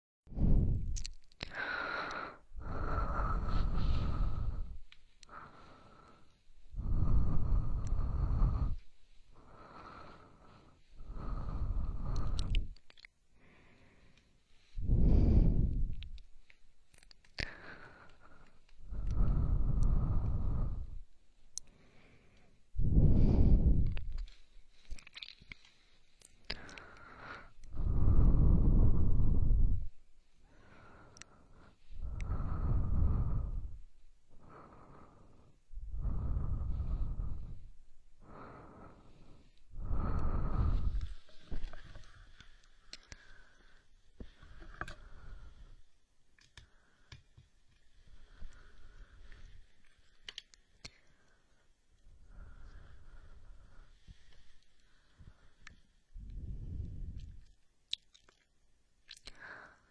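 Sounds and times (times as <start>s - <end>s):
breathing close to microphone: 0.3s - 12.8s, 13.4s - 46.0s, 46.6s - 57.6s, 59.2s - 59.9s
faint clicks: 0.9s - 2.4s, 11.9s - 13.2s, 13.8s - 14.4s, 15.9s - 20.4s, 21.5s - 22.6s, 23.8s - 27.8s, 46.3s - 51.4s, 57.1s - 59.8s.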